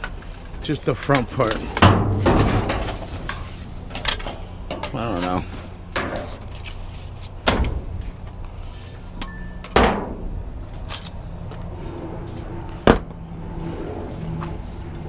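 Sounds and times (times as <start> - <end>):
scrap metal knocking and clattering: 1.1 - 6.5.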